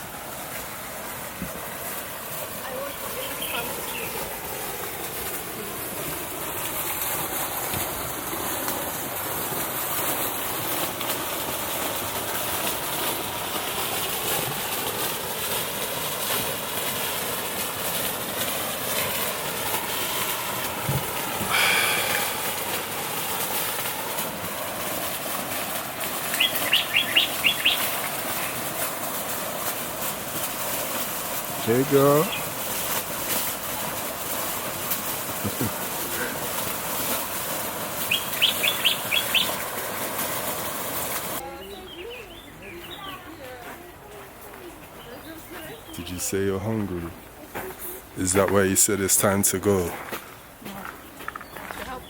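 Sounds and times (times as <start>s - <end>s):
bird calling sharp notes: 3.1s - 4.2s, 26.3s - 28.6s, 38.0s - 39.8s.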